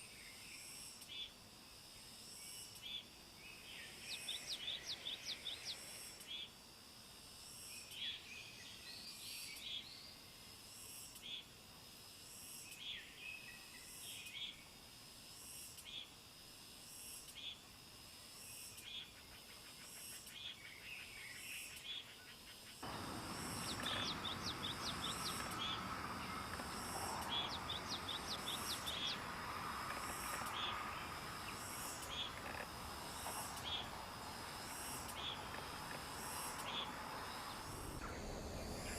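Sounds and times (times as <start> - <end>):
birds chirping and calling: 22.8 - 34.1, 35.0 - 38.9
high pulsing buzz: 22.8 - 38.9.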